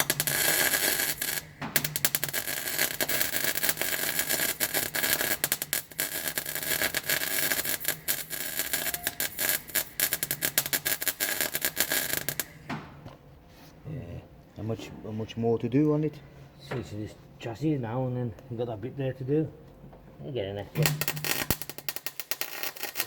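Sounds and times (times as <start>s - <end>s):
welding arc crackling: 0.0s - 12.6s, 20.8s - 23.0s.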